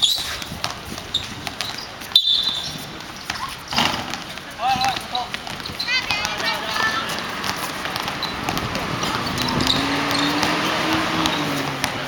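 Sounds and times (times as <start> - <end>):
shoe squeaks: 0.0 - 12.0
ball thuds: 3.2 - 12.0
background voices: 5.0 - 12.0.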